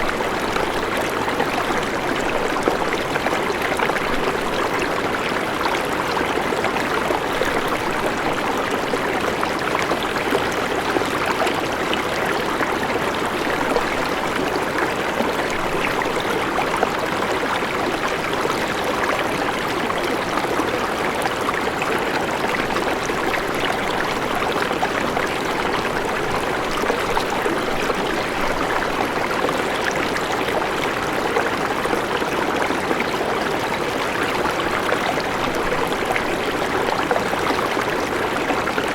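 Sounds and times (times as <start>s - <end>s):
river water rushing over rocks: 11.6s - 38.9s.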